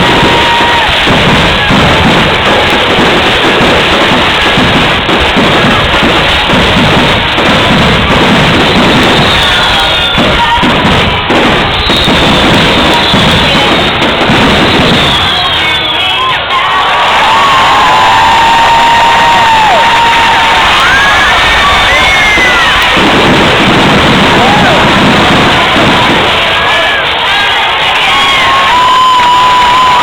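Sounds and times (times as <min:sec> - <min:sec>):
fireworks exploding: 0:00.0 - 0:30.0
high descending whistles: 0:11.7 - 0:16.4, 0:20.6 - 0:23.0.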